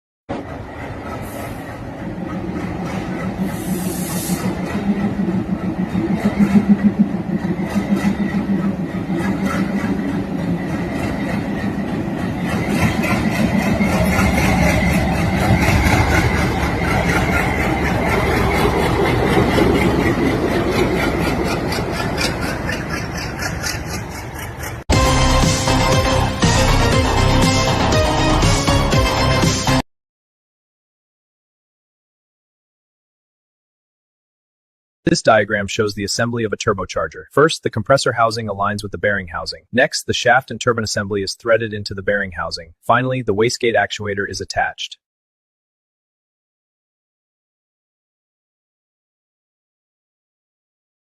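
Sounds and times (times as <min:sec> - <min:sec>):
heavy machinery running: 0:00.4 - 0:29.8.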